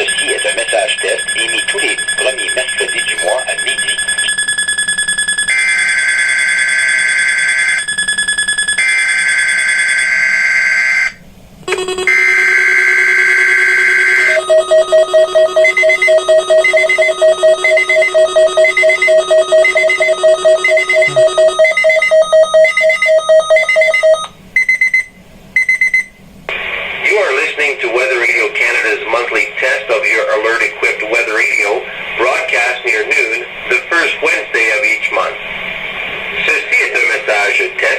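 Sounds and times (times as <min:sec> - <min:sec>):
warbling data tones: 0:00.0 - 0:06.5, 0:11.7 - 0:24.0
electronic alarm beeping: 0:00.0 - 0:26.1.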